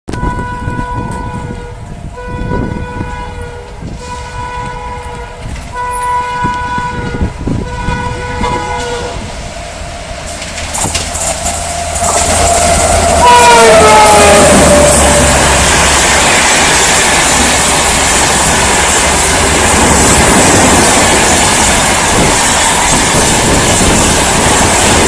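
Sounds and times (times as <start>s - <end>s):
locomotive horn honking: 0.1s - 18.2s
train rushing past: 0.1s - 25.0s.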